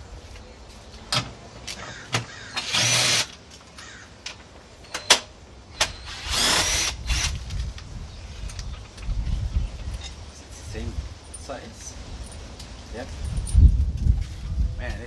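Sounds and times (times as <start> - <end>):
cordless impact wrench running: 2.6 - 3.3, 6.0 - 7.4.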